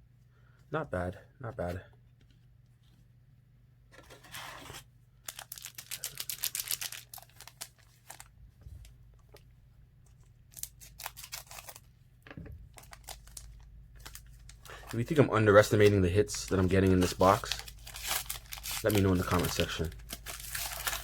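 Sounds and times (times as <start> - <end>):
foil wrapper crinkling and tearing: 5.2 - 8.3, 10.5 - 11.9, 12.7 - 21.0.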